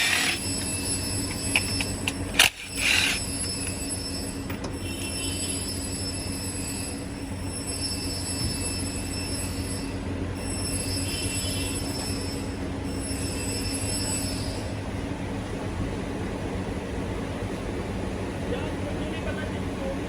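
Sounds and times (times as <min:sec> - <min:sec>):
car engine idling with misfire: 0:00.0 - 0:05.3.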